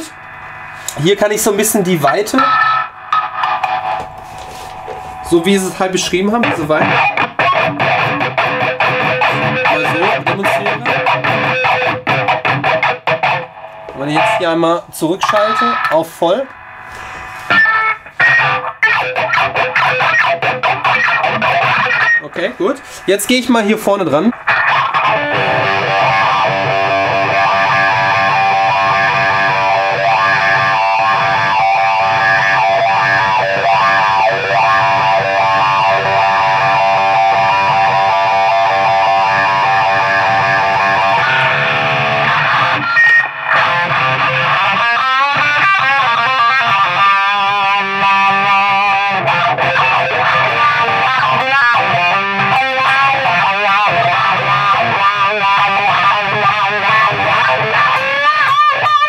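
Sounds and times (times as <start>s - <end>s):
distorted electric guitar with wah: 0.0s - 59.0s.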